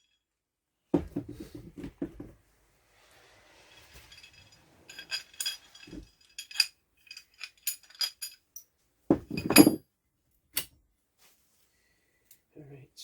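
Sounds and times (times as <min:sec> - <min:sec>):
metal parts and tools clinking: 0:03.5 - 0:09.8.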